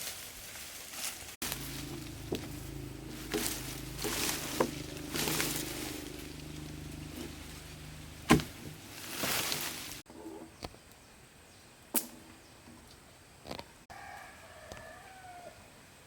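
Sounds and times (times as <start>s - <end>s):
small engine idling: 1.4s - 10.0s.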